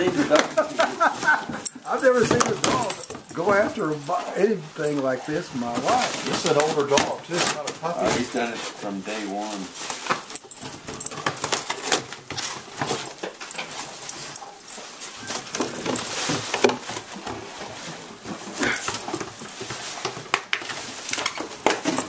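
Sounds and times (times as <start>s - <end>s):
dog ripping cardboard: 9.5s - 22.0s.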